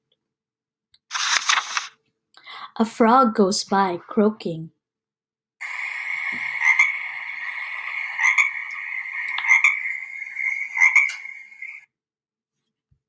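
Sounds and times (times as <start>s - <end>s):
frogs croaking: 5.6s - 11.8s.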